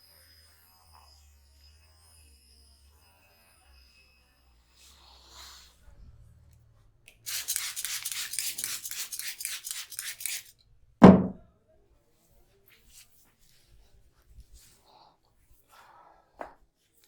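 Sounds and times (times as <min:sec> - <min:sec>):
hands rubbing hair and scalp: 0:07.3 - 0:10.5.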